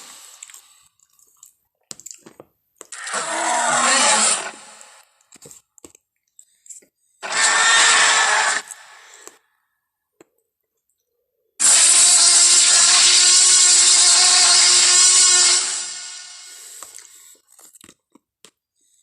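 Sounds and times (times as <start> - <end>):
dinosaur roar: 3.0 - 4.7, 7.2 - 8.8.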